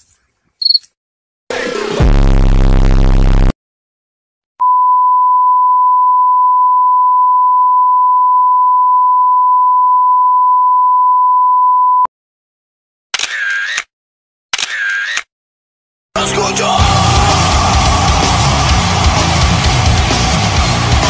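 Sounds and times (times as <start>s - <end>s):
censor beep tone: 4.6s - 12.1s.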